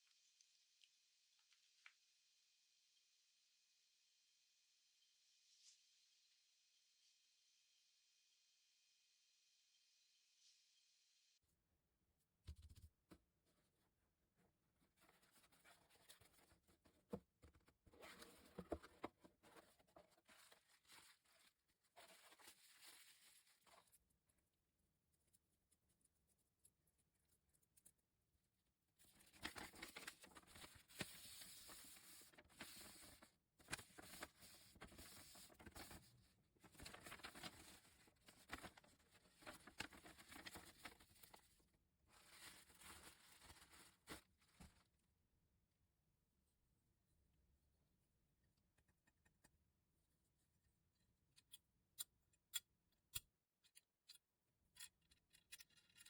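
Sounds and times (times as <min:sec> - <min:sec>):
rustling and scraping: 0:14.9 - 0:24.0, 0:42.1 - 0:44.8.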